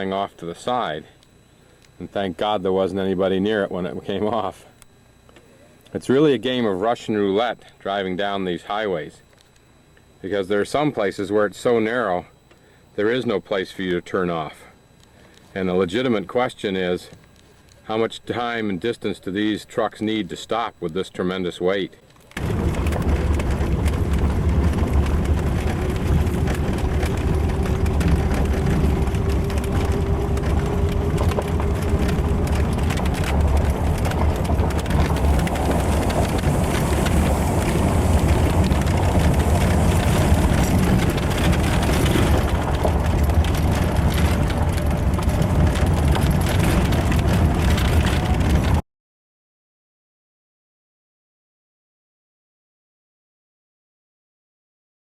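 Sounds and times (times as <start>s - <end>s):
low rumble of moving vehicle: 22.4s - 48.8s.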